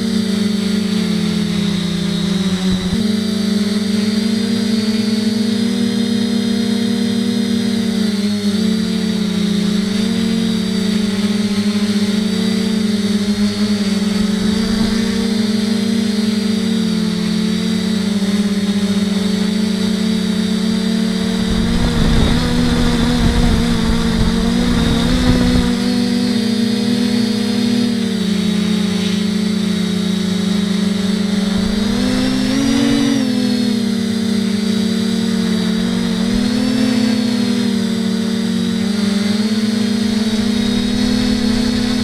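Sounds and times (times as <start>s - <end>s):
quadcopter propellers whining: 0.0s - 42.0s
wind rush on microphone: 1.3s - 3.1s, 9.5s - 15.7s, 18.2s - 26.4s, 30.5s - 33.6s, 39.9s - 42.0s.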